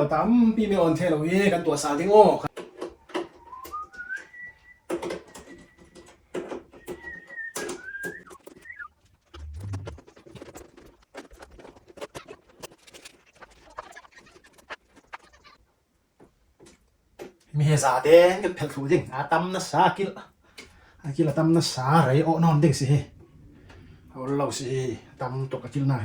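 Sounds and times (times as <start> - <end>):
high whistling tone: 3.4 - 4.9, 6.7 - 10.0.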